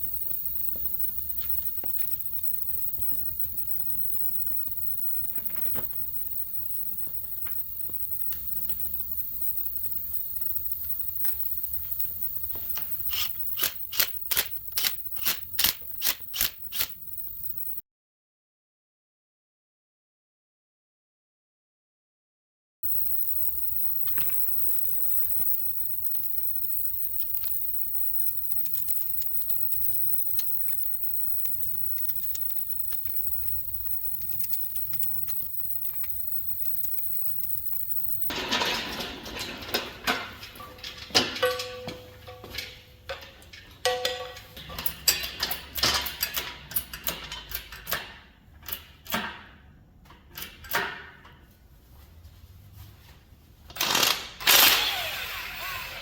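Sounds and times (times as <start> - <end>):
metal tools clinking: 38.3 - 48.0.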